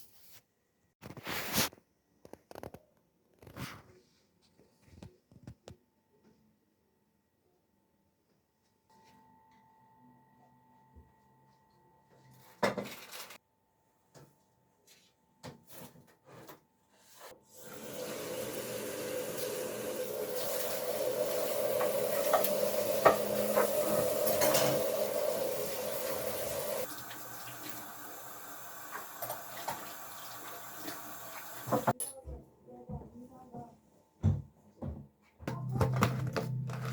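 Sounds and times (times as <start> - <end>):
tap running into a sink: 17.7 - 27.9, 28.8 - 31.9
dishes clinking: 21.8 - 25.4.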